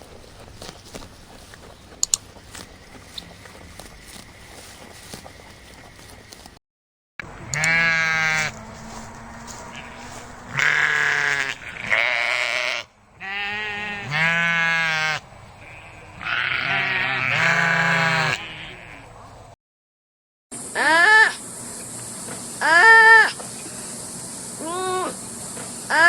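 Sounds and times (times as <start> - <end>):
livestock bleating: 7.3 - 19.2.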